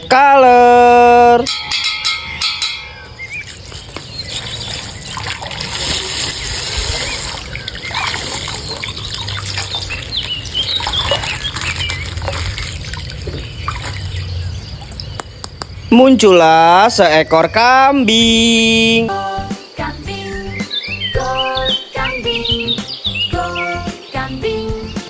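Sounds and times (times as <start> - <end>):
water splashing and trickling: 1.5 - 15.4
plastic bag crackling: 3.2 - 15.0.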